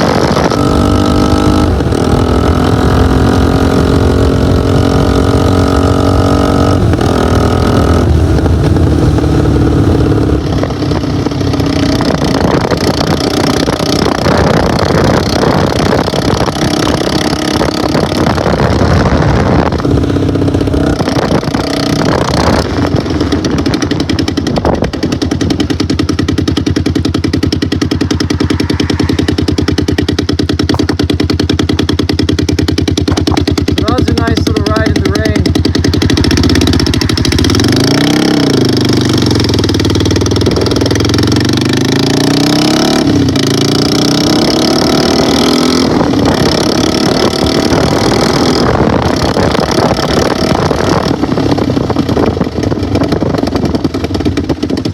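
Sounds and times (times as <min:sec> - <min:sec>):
motorcycle engine running: 0:00.0 - 0:54.9.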